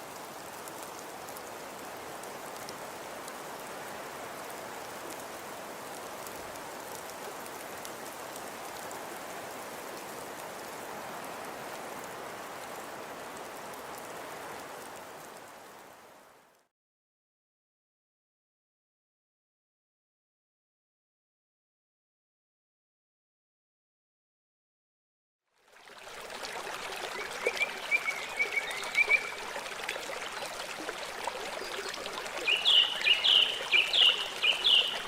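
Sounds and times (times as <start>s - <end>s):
steady rain falling: 0.0s - 16.7s, 25.6s - 35.0s.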